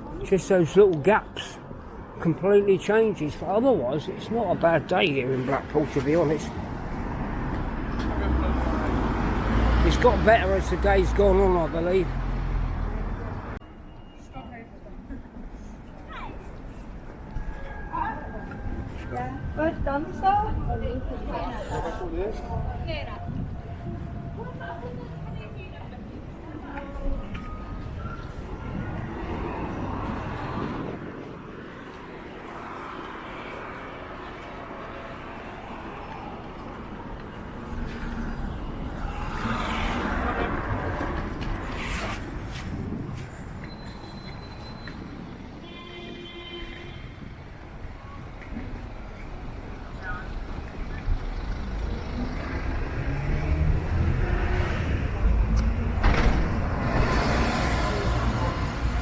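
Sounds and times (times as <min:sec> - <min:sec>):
road traffic hum: 0:00.0 - 0:59.0
wind buffeting microphone: 0:16.9 - 0:33.2, 0:33.9 - 0:45.6
vehicle engine rumbling past: 0:51.1 - 0:59.0.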